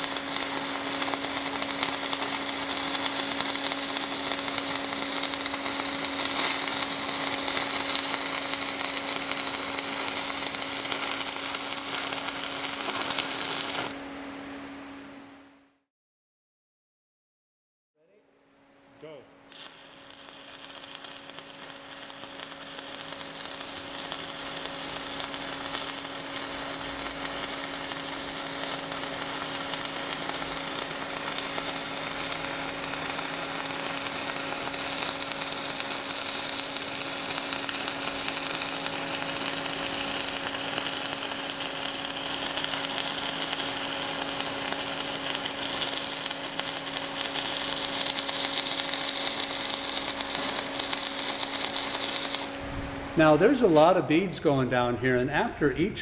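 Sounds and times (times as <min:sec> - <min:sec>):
welding arc crackling: 0:00.0 - 0:14.0, 0:19.5 - 0:52.6
steady hum: 0:00.0 - 0:15.6, 0:18.5 - 0:56.0.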